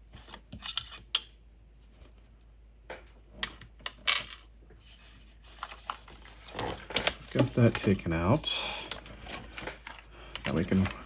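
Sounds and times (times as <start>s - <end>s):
plastic and metal parts clicking: 8.8s - 11.0s.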